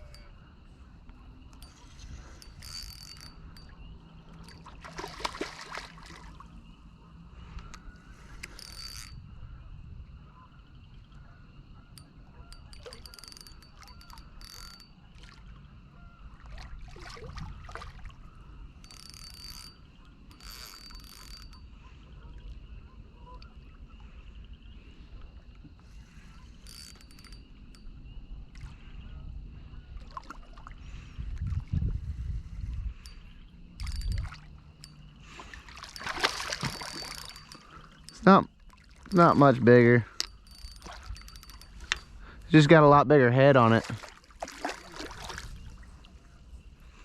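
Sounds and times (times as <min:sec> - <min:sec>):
fishing reel whirring and clicking: 0:01.4 - 0:05.4, 0:07.5 - 0:09.4, 0:11.9 - 0:15.1, 0:18.3 - 0:21.8, 0:25.6 - 0:28.8, 0:32.7 - 0:39.5, 0:40.1 - 0:42.2.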